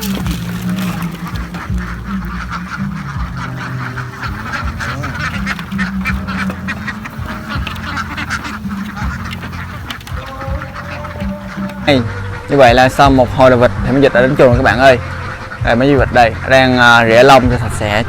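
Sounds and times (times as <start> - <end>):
ducks quacking: 0.0 - 18.0.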